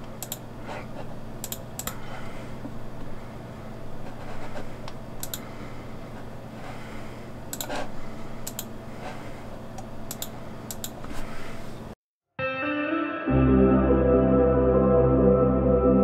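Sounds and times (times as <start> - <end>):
steady low hum: 0.0 - 12.0
keyboard and mouse clicks: 0.1 - 0.4, 1.4 - 2.0, 5.2 - 5.5, 7.5 - 7.8, 8.4 - 8.7, 10.1 - 11.0.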